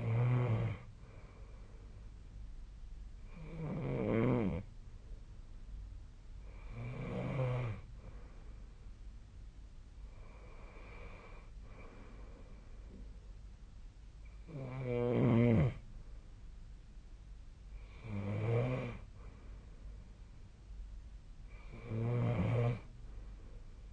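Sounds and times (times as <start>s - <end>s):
person snoring: 0.0s - 0.9s, 3.3s - 4.7s, 6.5s - 7.8s, 14.4s - 15.8s, 17.8s - 19.1s, 21.5s - 22.9s.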